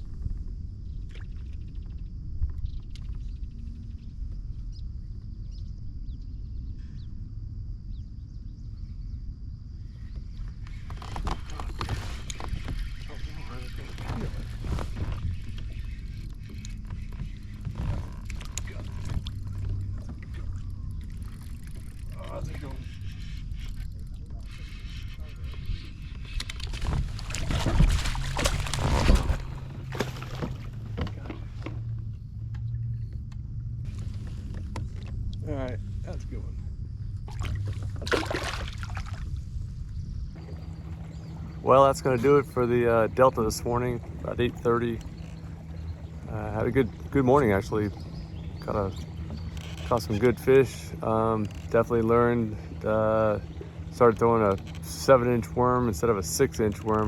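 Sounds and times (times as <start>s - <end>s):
low steady rumble: 0.0s - 57.0s
steady low hum: 0.0s - 57.0s
faint ticks: 15.4s - 24.6s
water splashing: 26.6s - 31.7s, 37.2s - 39.4s, 40.4s - 57.0s.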